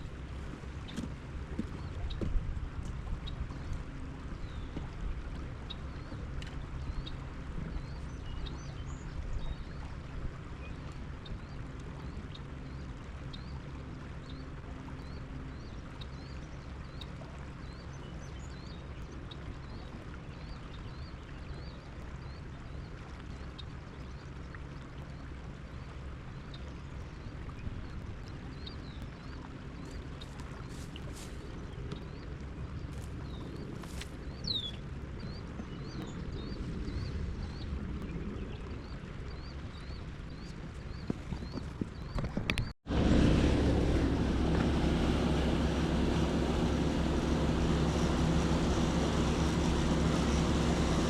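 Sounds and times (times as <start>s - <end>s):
river water rushing: 42.9s - 51.0s.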